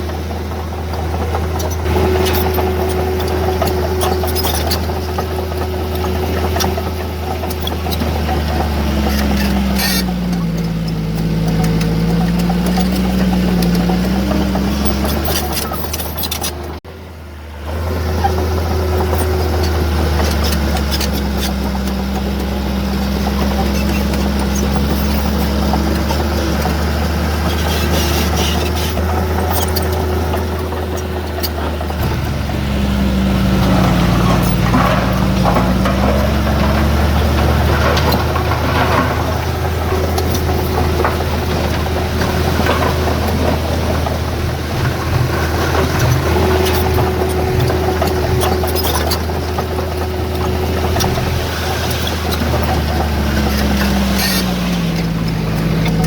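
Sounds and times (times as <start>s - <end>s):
heavy diesel engine running: 0.0s - 56.0s
metallic clanks: 23.2s - 56.0s.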